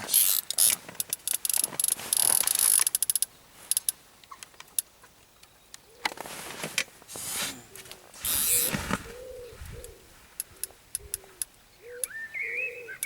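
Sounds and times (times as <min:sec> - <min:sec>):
fishing reel clicking: 0:00.1 - 0:04.0, 0:08.2 - 0:08.7.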